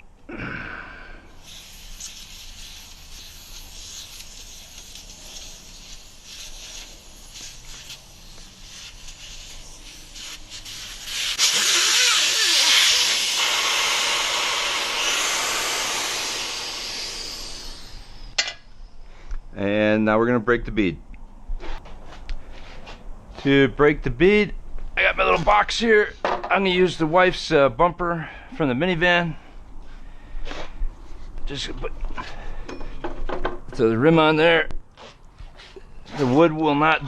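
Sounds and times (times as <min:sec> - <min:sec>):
air hissing from tire valve: 0:01.2 - 0:18.4.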